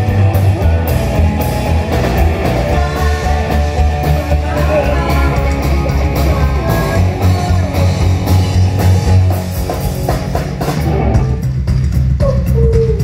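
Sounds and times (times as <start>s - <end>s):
drum kit beat: 0.0s - 13.0s
electric guitar: 0.0s - 13.0s
heavy bass line: 0.0s - 13.0s.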